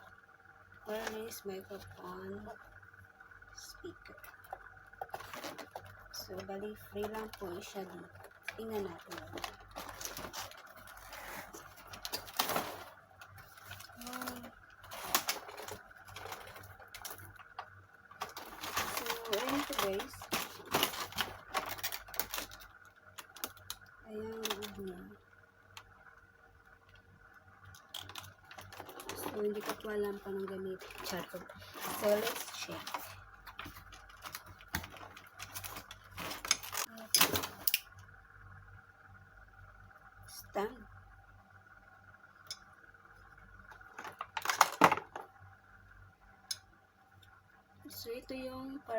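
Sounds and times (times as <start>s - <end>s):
packaging rustles and clicks: 4.2s - 6.1s, 7.0s - 23.8s, 28.0s - 37.8s.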